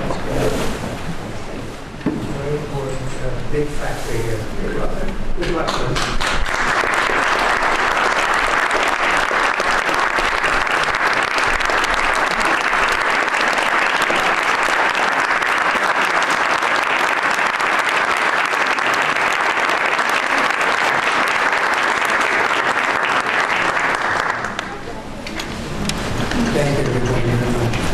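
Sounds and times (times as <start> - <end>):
audience applauding: 5.5 - 25.0.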